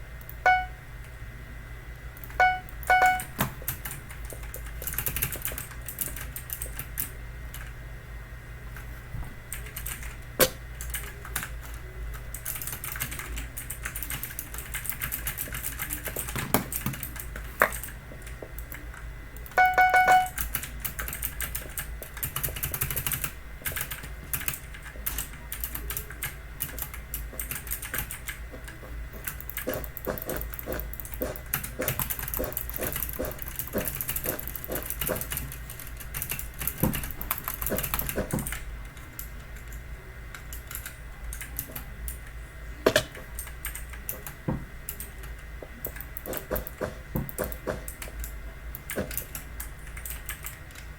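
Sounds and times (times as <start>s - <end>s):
electronic beeps: 0.4s - 0.8s, 2.4s - 3.4s, 19.5s - 20.4s
clicky keyboard typing: 2.2s - 7.7s, 9.5s - 18.8s, 19.4s - 42.2s, 43.0s - 50.9s.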